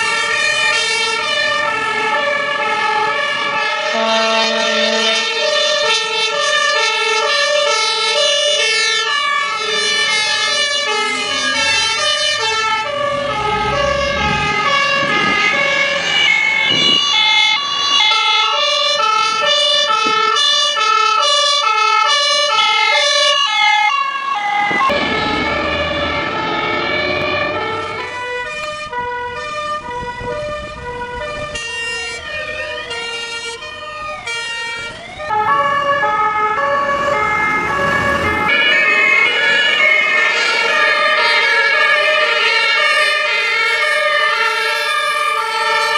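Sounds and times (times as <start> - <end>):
two-tone sirens: 0.0 - 45.9
wailing siren: 0.0 - 45.9
engine rumble: 8.2 - 20.8, 24.2 - 31.6, 34.8 - 43.2.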